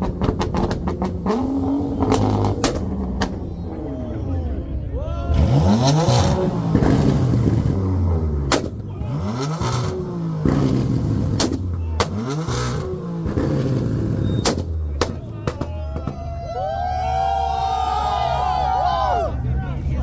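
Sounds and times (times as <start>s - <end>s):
car engine revving hard: 0.0s - 4.7s, 5.3s - 15.2s
sharp exhaust cracks: 0.0s - 16.3s.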